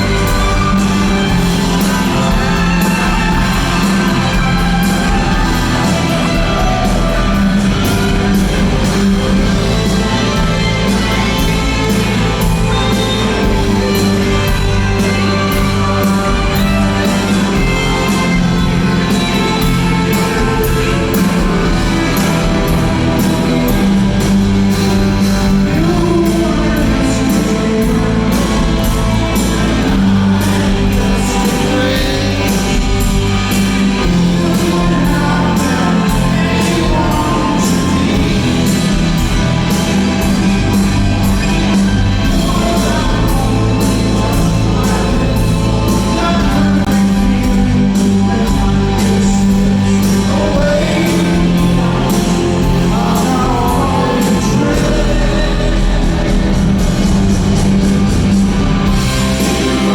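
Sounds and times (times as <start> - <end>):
bass guitar: 0.0 - 59.9
electric guitars: 0.0 - 59.9
person singing: 0.0 - 59.9
steady drum beat: 0.0 - 59.9.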